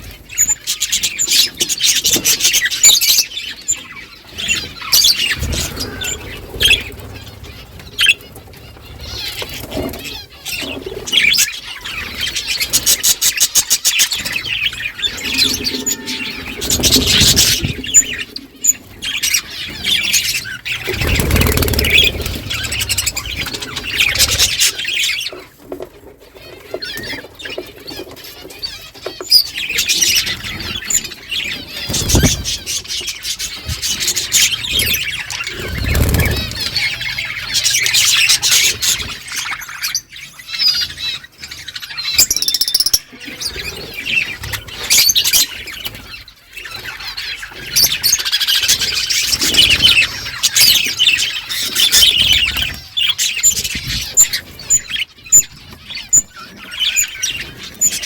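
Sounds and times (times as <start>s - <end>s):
budgerigars chirping and chattering: 0.0s - 58.0s
wings fluttering: 4.3s - 25.5s, 30.2s - 39.2s.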